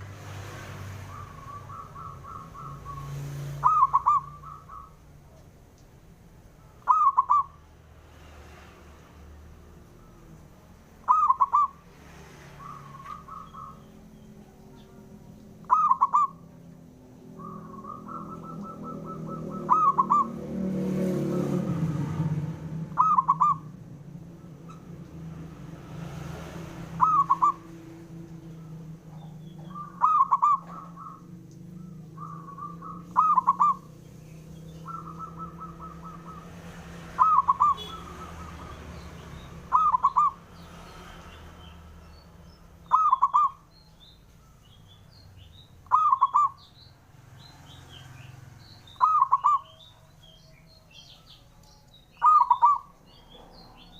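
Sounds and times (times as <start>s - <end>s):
dove cooing: 1.0s - 5.2s, 6.7s - 7.6s, 11.0s - 11.8s, 12.6s - 16.6s, 17.3s - 22.0s, 22.8s - 25.1s, 26.7s - 39.0s, 39.6s - 40.5s, 42.8s - 43.6s, 45.9s - 46.6s, 49.0s - 50.1s, 52.2s - 53.9s.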